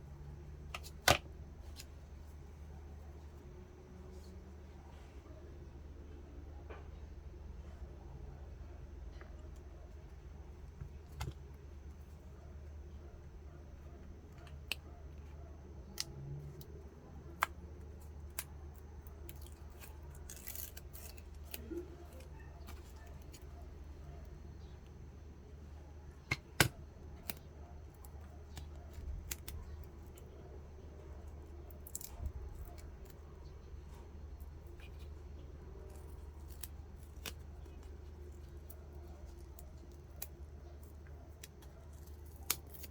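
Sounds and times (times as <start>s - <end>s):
low steady hum: 0.0s - 42.9s
clicks and snips: 26.2s - 30.4s, 31.0s - 42.9s.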